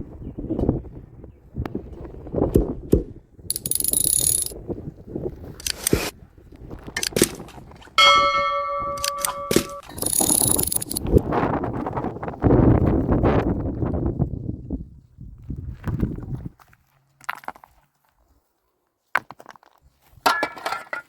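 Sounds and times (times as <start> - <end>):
struck metal object ringing: 8.0 - 10.7.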